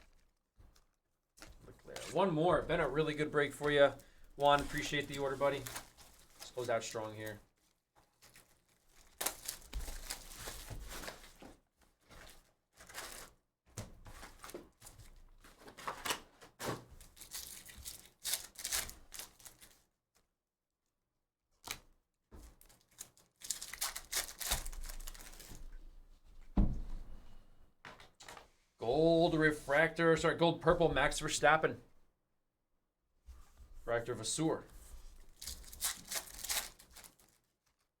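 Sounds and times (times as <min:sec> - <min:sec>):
cards being handled: 0:02.9 - 0:07.4, 0:21.6 - 0:25.7
foil wrappers tearing and crinkling: 0:02.9 - 0:11.4, 0:12.2 - 0:13.4, 0:14.2 - 0:19.8, 0:22.4 - 0:25.7, 0:35.2 - 0:37.9.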